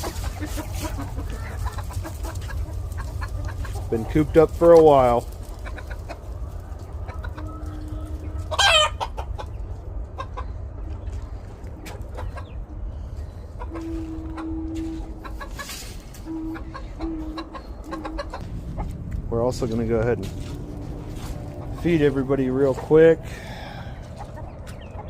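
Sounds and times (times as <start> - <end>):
chicken squawk: 0.0 - 4.1, 7.0 - 9.6, 13.5 - 18.9
chickens clucking: 0.0 - 25.0
steady low rumble: 0.0 - 25.0.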